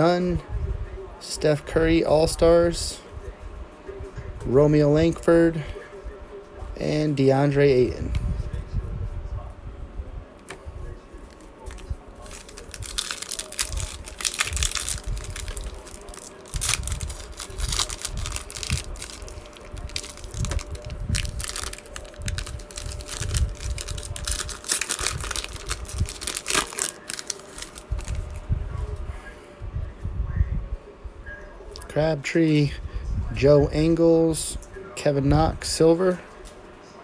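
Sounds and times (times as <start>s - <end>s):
wrapper crinkling and tearing: 11.2s - 28.4s.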